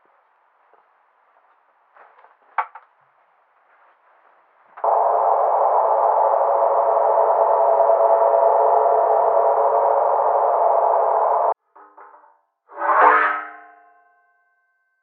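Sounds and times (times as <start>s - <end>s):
electronic test tone: 4.8s - 11.6s.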